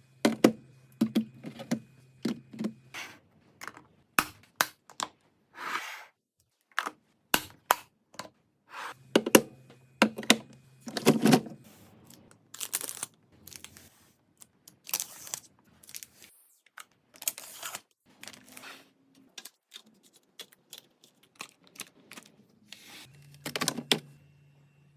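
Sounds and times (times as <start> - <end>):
items set down with clicks and knocks: 9.1 - 11.6
plastic packaging rustling and tearing: 12.1 - 14.0, 14.7 - 16.3, 17.2 - 23.4.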